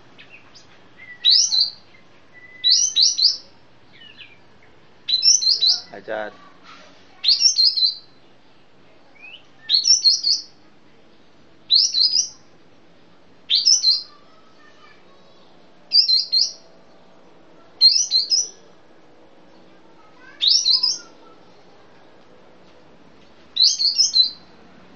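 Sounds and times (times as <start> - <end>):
bulbul singing: 0.0 - 12.6, 13.3 - 18.8, 19.4 - 21.8, 23.5 - 24.6.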